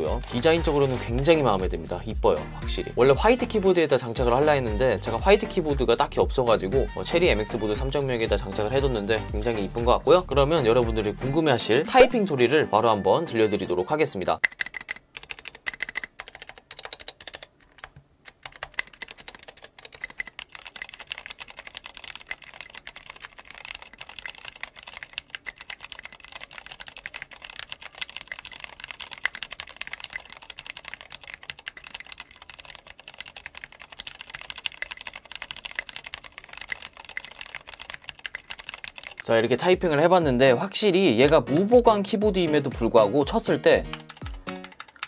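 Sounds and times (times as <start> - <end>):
mechanical keyboard typing: 0.0 - 1.8, 14.4 - 40.3, 41.2 - 45.0.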